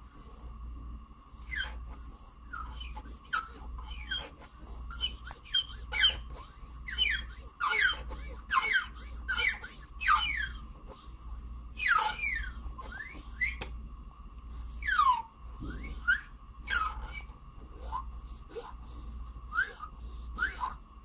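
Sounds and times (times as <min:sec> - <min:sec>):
file squeaking on plastic: 0:01.4 - 0:10.7, 0:11.8 - 0:13.7, 0:14.6 - 0:18.8, 0:19.5 - 0:20.8.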